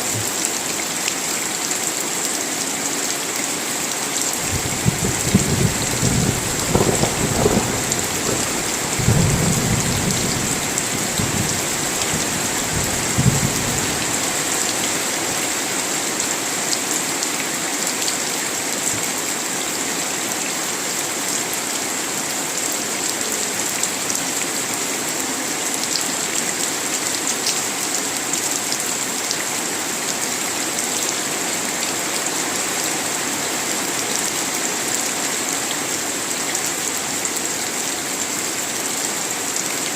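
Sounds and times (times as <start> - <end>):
steady rain falling: 0.0 - 39.9
rolling thunder: 4.4 - 14.6.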